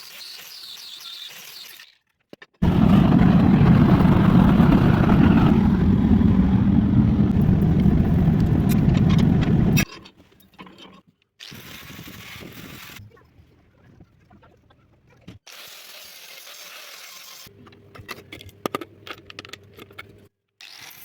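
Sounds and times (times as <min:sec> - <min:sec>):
loud mechanical rumble: 0:02.6 - 0:09.8.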